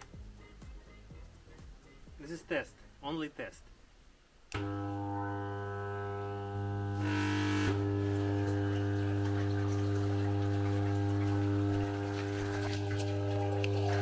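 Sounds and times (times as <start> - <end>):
electric water pump humming: 4.2 - 14.0
noisy rush of pump: 7.1 - 14.0.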